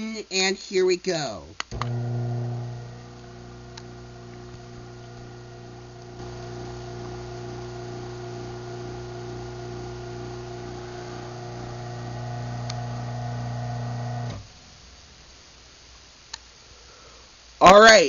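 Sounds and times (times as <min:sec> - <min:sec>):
garage door opener motor humming: 0:01.7 - 0:14.6.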